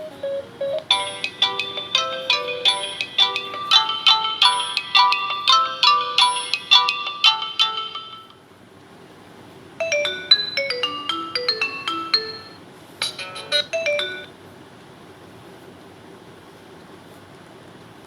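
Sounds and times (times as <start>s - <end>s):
bright plucked ringtone notes: 0.0s - 8.3s, 9.8s - 14.3s
electronic ringtone melody: 0.0s - 8.4s, 9.8s - 14.3s.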